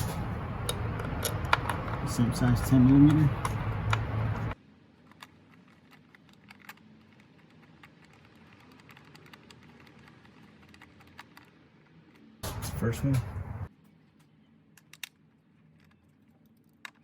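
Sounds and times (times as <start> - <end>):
small metal parts clicking: 5.0 - 12.4.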